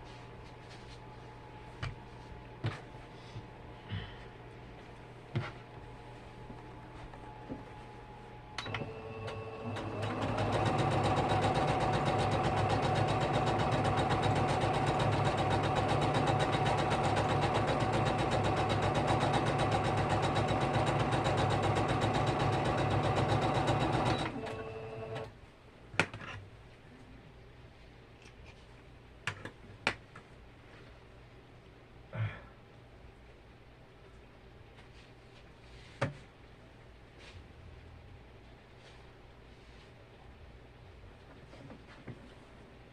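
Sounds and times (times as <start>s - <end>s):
electric sewing machine stitching: 8.7s - 25.3s.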